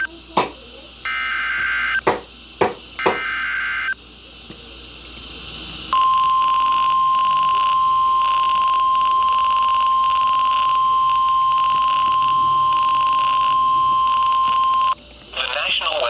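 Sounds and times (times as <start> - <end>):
steady warning alarm tone: 0.0 - 4.0
sharp clicks: 15.0 - 15.3.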